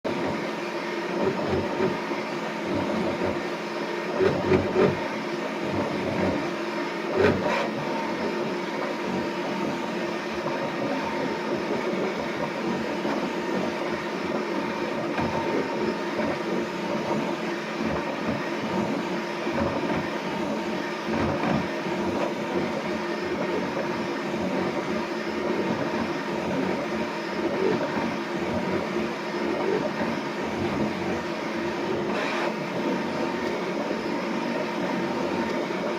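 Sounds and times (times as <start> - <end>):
printer rattle and hum: 0.1 - 35.9.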